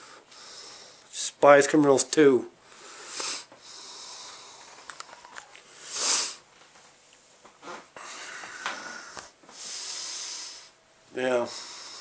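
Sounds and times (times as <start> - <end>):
man breathing: 0.0 - 1.1, 2.6 - 6.5, 7.7 - 12.0.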